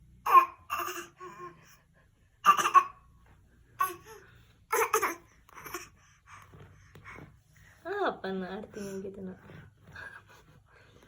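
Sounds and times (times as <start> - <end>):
child coughing playfully: 4.7 - 5.2.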